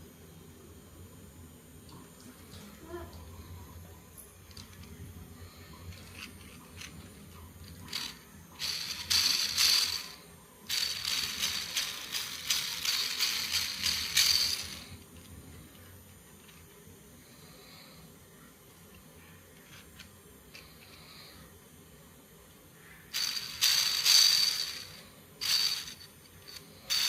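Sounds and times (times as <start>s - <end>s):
plastic spinner rattling: 5.7s - 16.8s, 23.1s - 27.0s.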